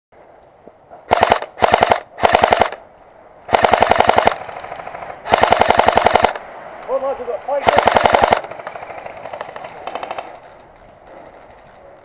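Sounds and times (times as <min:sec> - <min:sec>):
airsoft gun firing bursts: 0:01.1 - 0:02.8, 0:03.5 - 0:06.4, 0:07.6 - 0:10.4.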